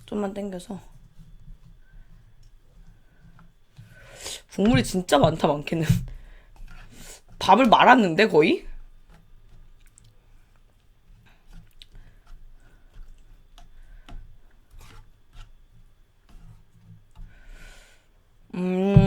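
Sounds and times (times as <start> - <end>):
chewing: 8.6 - 15.9.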